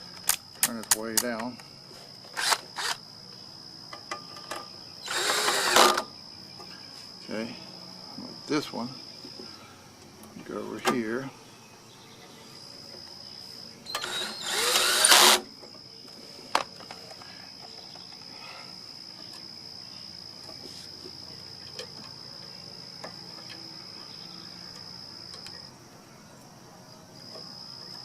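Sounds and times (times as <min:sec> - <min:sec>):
sharp click: 0:00.2 - 0:01.6
cordless drill running: 0:02.4 - 0:03.0, 0:05.1 - 0:06.0, 0:13.9 - 0:15.4.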